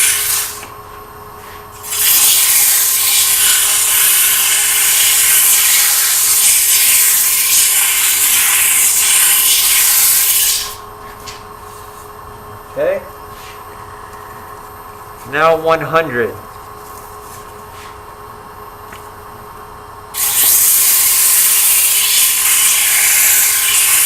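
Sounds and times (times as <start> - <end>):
sandpaper rasping on spinning wood: 20.2 - 24.0.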